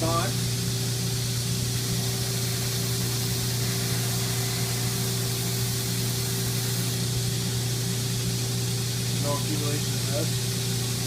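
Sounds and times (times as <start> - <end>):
blower air hiss: 0.0 - 11.0
belt grinder humming: 1.0 - 11.0.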